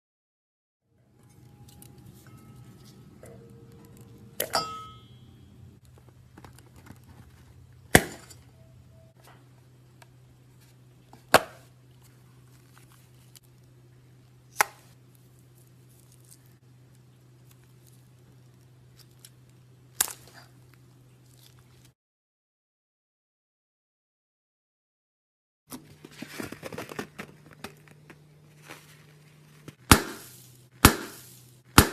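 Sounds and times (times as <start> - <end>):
steady low hum: 0.9 - 21.9
ringing clink: 1.3 - 5.6.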